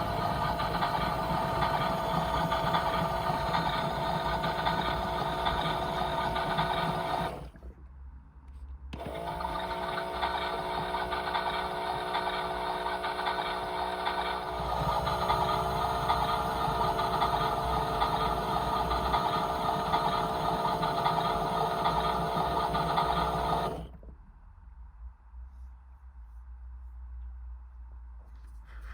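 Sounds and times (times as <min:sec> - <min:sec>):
small electric motor whining: 0:00.0 - 0:07.5, 0:09.0 - 0:23.9.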